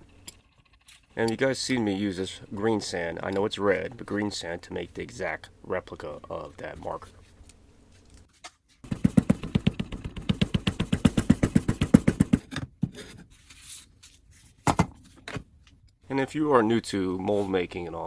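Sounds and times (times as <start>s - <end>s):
rapid dull tapping of packed sand: 8.8s - 12.4s
scattered knocks: 8.8s - 12.5s.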